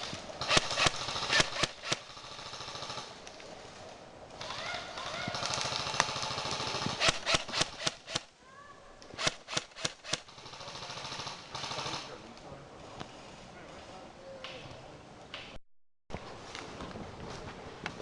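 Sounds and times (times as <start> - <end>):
airsoft guns firing: 0.4 - 3.1, 5.0 - 8.3, 9.2 - 12.1.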